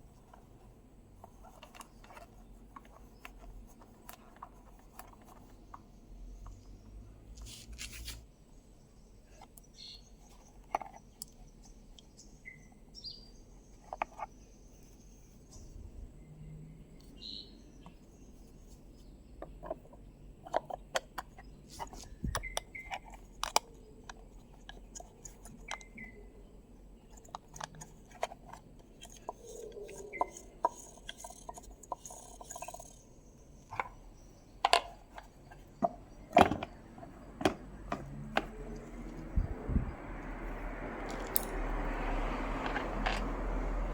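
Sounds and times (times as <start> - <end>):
faint bird chirps: 8.5 - 20.3, 25.4 - 27.3, 29.2 - 37.3
sharp clicks and knocks: 34.6 - 39.4, 42.4 - 43.9.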